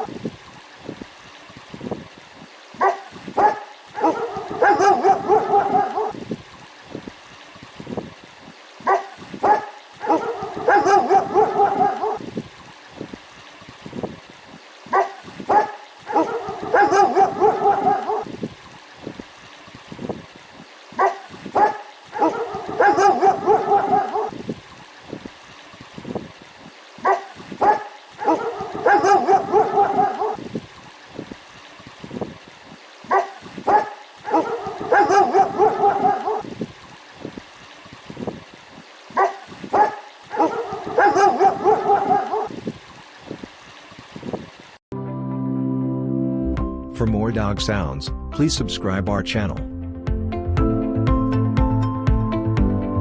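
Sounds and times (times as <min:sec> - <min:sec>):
dog barking angrily: 0:02.8 - 0:06.2, 0:08.8 - 0:12.2, 0:14.9 - 0:18.3, 0:21.0 - 0:24.4, 0:27.0 - 0:30.4, 0:33.1 - 0:36.4, 0:39.2 - 0:42.5.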